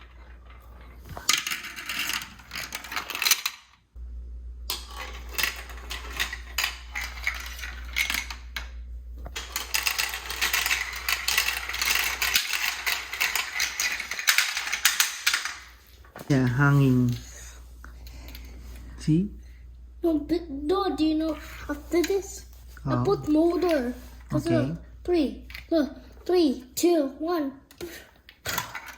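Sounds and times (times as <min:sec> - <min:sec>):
marbles clattering down plastic run: 0:00.0 - 0:03.8, 0:04.7 - 0:08.7, 0:09.4 - 0:15.7.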